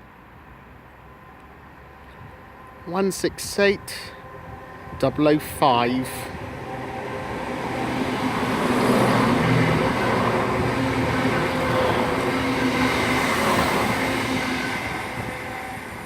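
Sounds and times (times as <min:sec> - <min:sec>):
diesel train engines humming: 0:00.2 - 0:16.0
train wheels rumbling on rails: 0:02.2 - 0:16.0.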